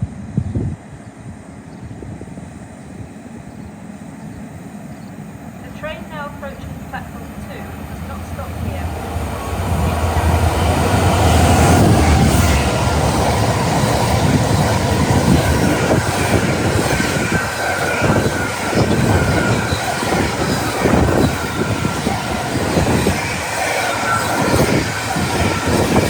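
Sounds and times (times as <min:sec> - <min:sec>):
train wheels rumbling on rails: 0:00.1 - 0:26.0
high wheel squeal: 0:07.5 - 0:26.0.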